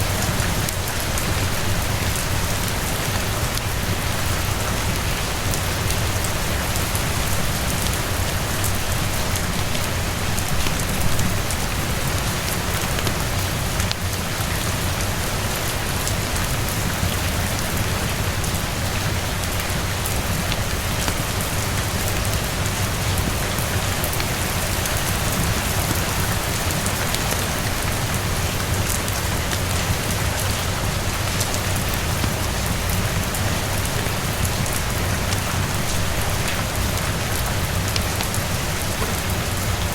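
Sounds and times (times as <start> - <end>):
rain pattering on surfaces: 0.0 - 39.9.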